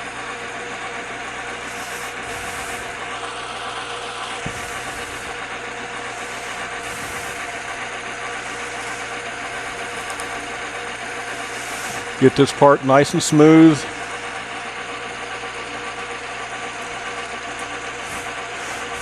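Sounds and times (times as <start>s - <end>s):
lathe motor running: 0.0s - 19.0s
high-pitched cutting noise: 1.6s - 12.4s, 18.0s - 19.0s.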